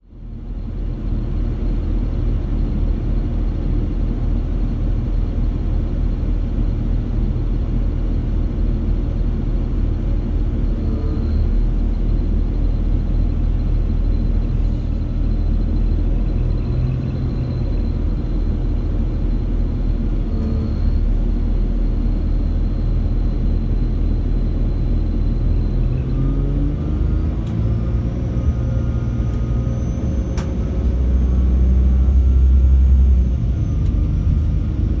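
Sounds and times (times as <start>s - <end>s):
train diesel engines rumbling: 0.1s - 35.0s
turbocharger whistle: 10.7s - 12.0s, 20.1s - 21.4s.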